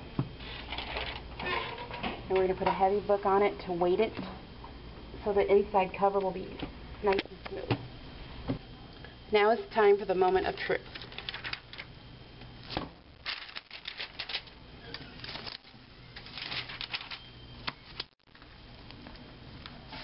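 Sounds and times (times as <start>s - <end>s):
paper rustling and crinkling: 10.7s - 11.9s, 12.7s - 20.0s.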